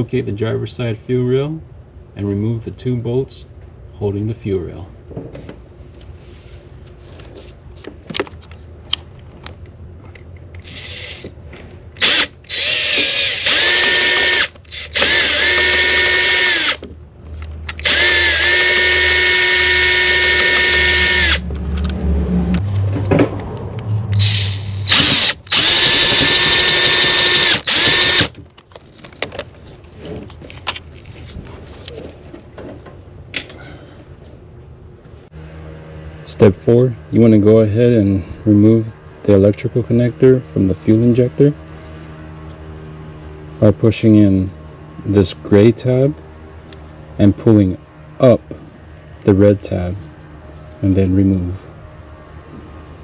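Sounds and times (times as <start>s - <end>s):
power tool whining: 10.6s - 11.4s, 12.0s - 16.9s, 17.7s - 21.6s, 24.1s - 28.4s.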